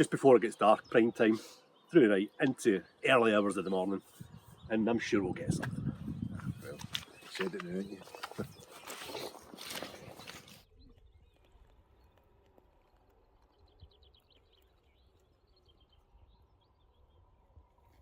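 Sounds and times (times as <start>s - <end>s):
songbird trill: 0.0s - 18.0s
low wind rumble: 4.2s - 8.7s.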